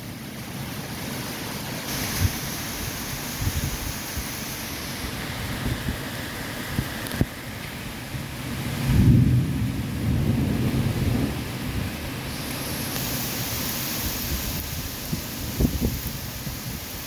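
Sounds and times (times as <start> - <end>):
steady rain: 0.0 - 17.0
thunder rumbling: 8.1 - 17.0.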